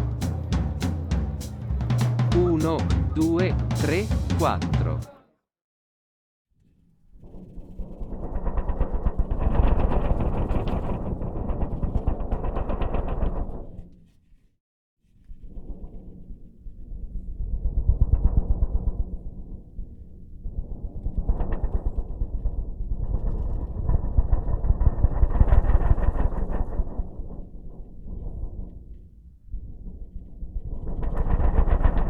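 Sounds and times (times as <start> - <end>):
kick drum rumbling roll: 0.0 - 5.0.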